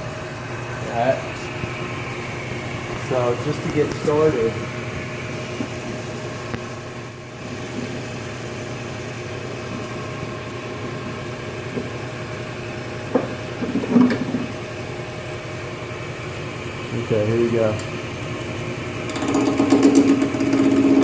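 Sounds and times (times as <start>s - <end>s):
wood lathe humming: 0.0s - 21.0s
sharp knocks and clatter: 19.1s - 21.0s.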